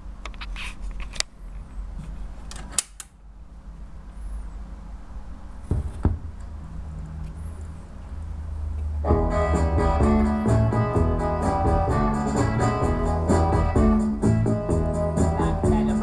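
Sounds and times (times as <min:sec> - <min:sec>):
low amplifier hum: 0:03.2 - 0:16.0
heavy thumps: 0:05.6 - 0:06.7, 0:09.0 - 0:16.0.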